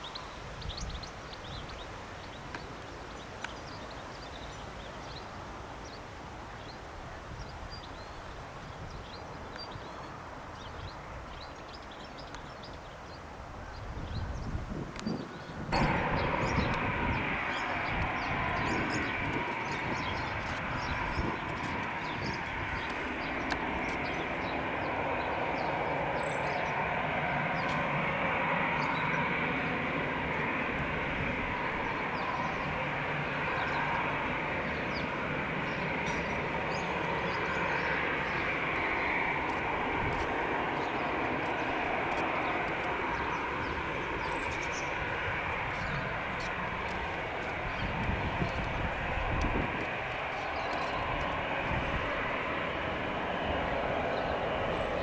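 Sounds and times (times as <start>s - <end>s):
jet engines running: 14.7s - 55.0s.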